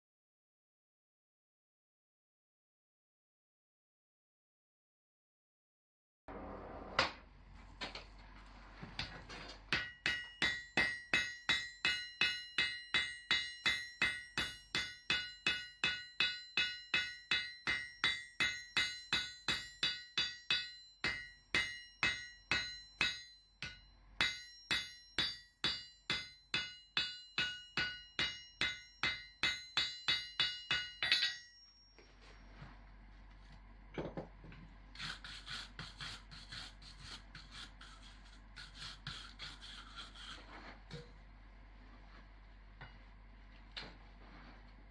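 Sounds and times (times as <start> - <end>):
hammer blows on anvil: 9.7 - 32.2.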